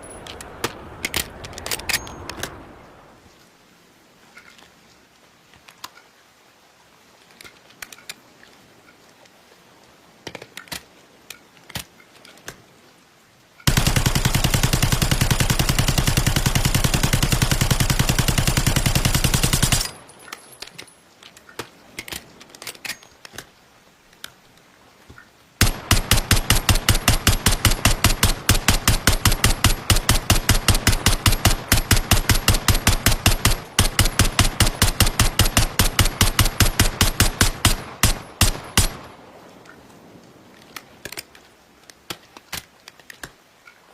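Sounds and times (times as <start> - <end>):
light clicks and rattles: 7.2 - 9.4, 19.6 - 25.3, 39.6 - 43.9
submachine gun firing full auto: 13.7 - 20.0, 25.6 - 39.1.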